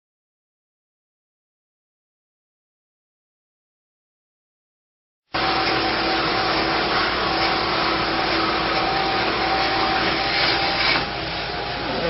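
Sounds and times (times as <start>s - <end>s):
motor running with hum: 5.4s - 12.0s.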